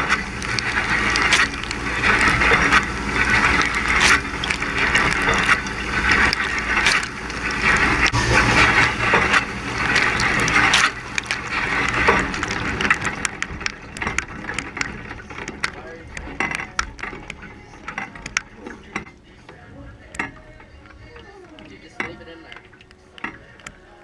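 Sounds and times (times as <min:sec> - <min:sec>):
dishwasher water spraying: 0:00.0 - 0:16.6.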